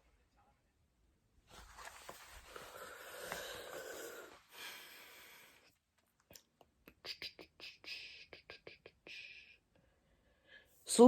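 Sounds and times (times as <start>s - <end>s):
person breathing: 2.2s - 5.8s, 9.1s - 10.8s.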